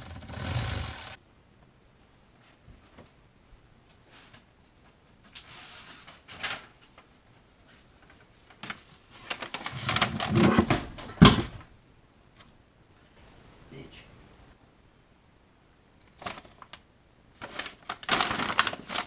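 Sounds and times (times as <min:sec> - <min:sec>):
rustling and crinkling: 0:03.9 - 0:11.7, 0:16.2 - 0:16.8, 0:17.4 - 0:19.0.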